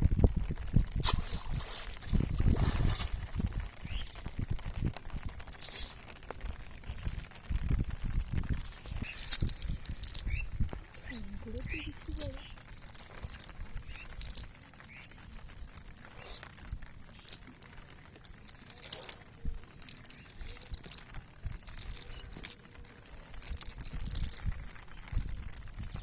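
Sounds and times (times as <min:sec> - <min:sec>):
rustling and crackling: 0:00.0 - 0:26.0.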